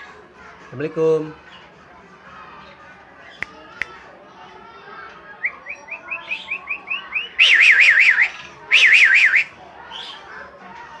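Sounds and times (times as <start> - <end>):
myna whistling: 5.4 - 9.5.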